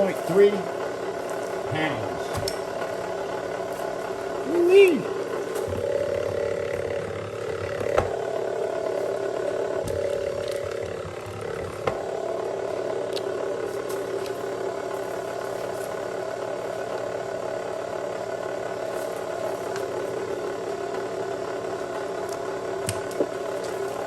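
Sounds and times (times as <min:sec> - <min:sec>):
machine hum: 0:00.0 - 0:24.0.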